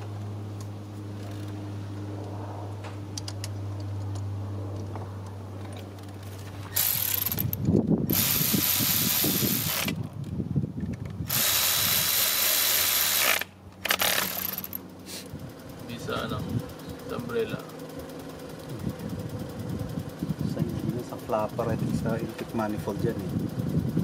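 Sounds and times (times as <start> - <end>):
steady low hum: 0.0 - 24.0
power ratchet running: 6.1 - 10.0, 11.2 - 24.0.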